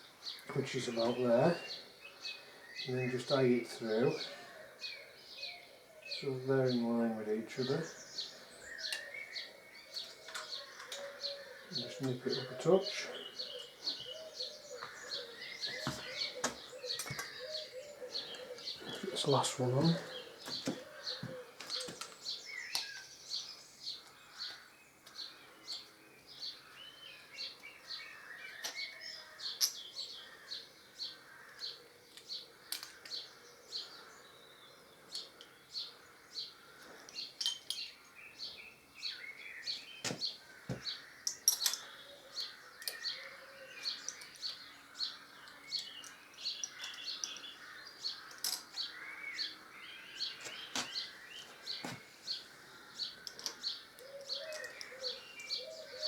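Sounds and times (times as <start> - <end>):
bird chirping: 0.0 - 56.0
faint birdsong: 0.0 - 56.0.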